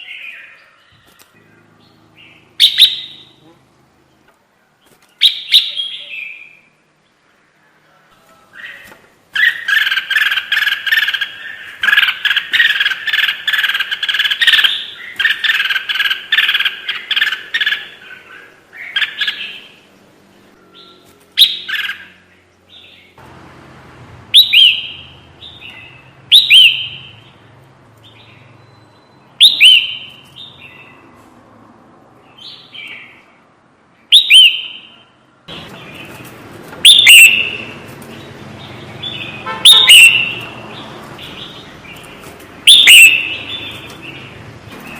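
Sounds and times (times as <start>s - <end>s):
bird chattering: 1.4s - 4.2s, 9.4s - 19.8s, 36.8s - 44.4s
bird whistled calls: 2.6s - 3.4s, 24.4s - 25.0s, 25.6s - 27.1s, 28.6s - 30.1s, 34.1s - 34.9s, 36.8s - 37.6s, 39.1s - 40.4s, 42.7s - 43.8s.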